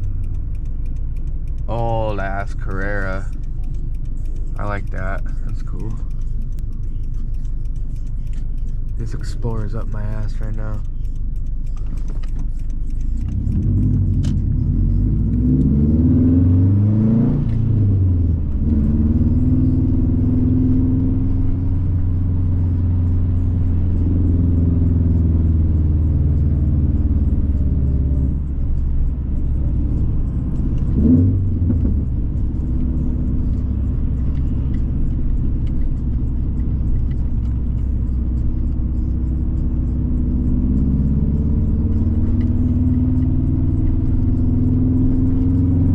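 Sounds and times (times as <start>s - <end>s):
car engine revving while driving: 0.0s - 45.9s.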